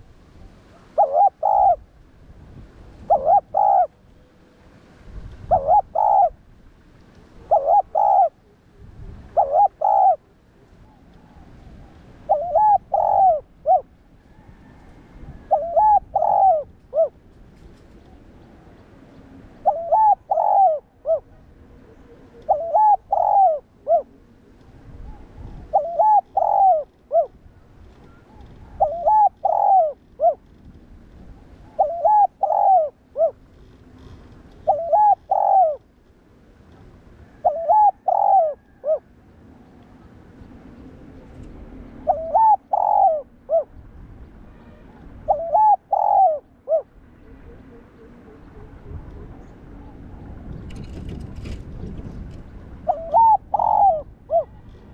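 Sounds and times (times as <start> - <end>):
dove cooing: 0.0 - 1.8, 3.0 - 4.3, 5.4 - 6.4, 7.3 - 18.5, 19.6 - 30.5, 31.6 - 35.9, 37.2 - 39.1, 41.9 - 43.7, 44.5 - 50.4, 52.8 - 54.9.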